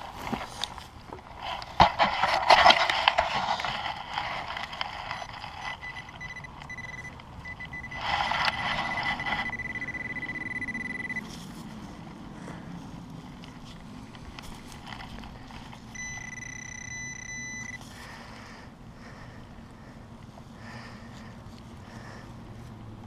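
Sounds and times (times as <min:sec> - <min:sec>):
scraping and rustling in dirt: 0:00.0 - 0:06.8, 0:07.7 - 0:10.3, 0:11.0 - 0:16.0
metal detector high tone: 0:05.2 - 0:11.3, 0:15.9 - 0:17.8.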